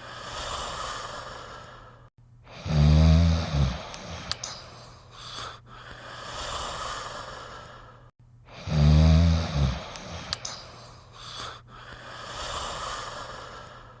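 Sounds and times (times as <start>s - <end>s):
breathy breaths: 0.0s - 14.0s
faint steady hum: 0.0s - 14.0s
loud low snore: 2.5s - 4.4s, 8.5s - 10.4s.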